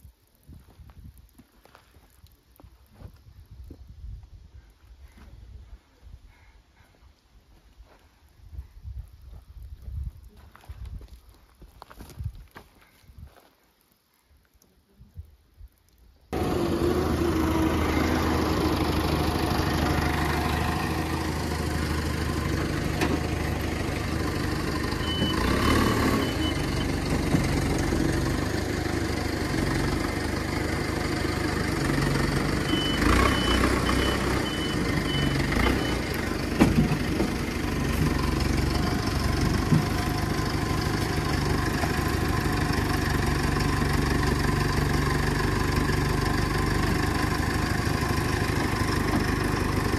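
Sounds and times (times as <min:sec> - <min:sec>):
heavy machine engine running: 0:16.4 - 0:49.9
reversing alarm beeping: 0:25.0 - 0:27.0, 0:32.7 - 0:36.1.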